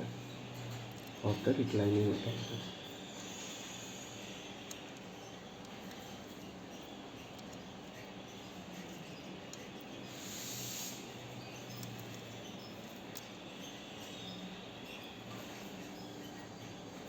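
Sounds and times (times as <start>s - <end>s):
brief hiss: 10.1s - 11.0s.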